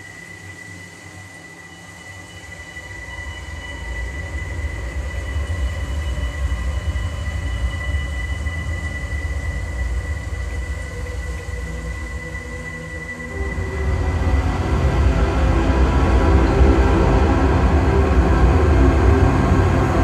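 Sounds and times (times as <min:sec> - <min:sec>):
deep low rumble drone: 0:04.0 - 0:20.0
steady high tone: 0:13.1 - 0:20.0.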